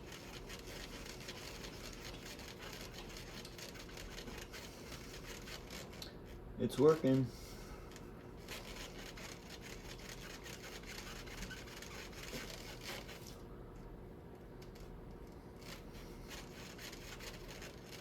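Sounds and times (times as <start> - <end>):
plastic hub scraping on shaft: 0.0 - 13.4, 14.6 - 18.0.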